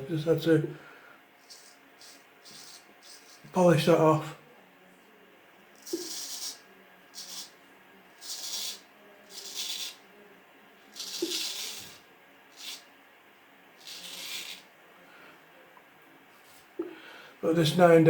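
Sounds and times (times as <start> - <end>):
straight razor scraping stubble: 1.4 - 3.5, 5.8 - 6.6, 10.9 - 12.9, 13.8 - 14.7.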